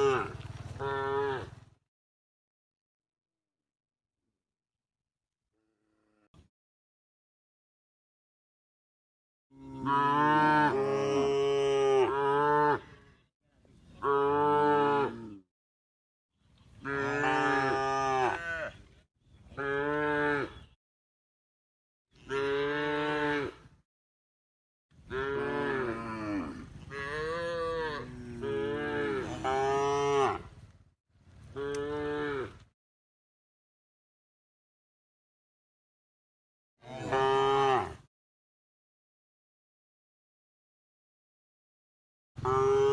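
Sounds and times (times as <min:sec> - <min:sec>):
cows mooing: 0:09.6 - 0:13.0, 0:16.8 - 0:18.8, 0:25.1 - 0:30.6, 0:31.5 - 0:32.6, 0:36.8 - 0:38.1, 0:42.4 - 0:42.9.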